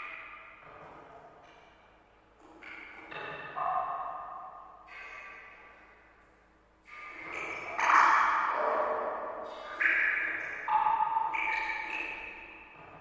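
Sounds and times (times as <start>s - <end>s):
water drops plinking in cave pool: 9.6s - 12.8s.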